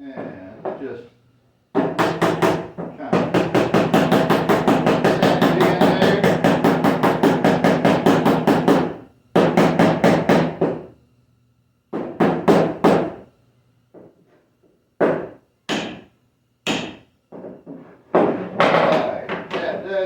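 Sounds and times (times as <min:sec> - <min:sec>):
hammer tapping on wood: 0:01.8 - 0:10.9, 0:11.9 - 0:13.2, 0:15.0 - 0:19.8.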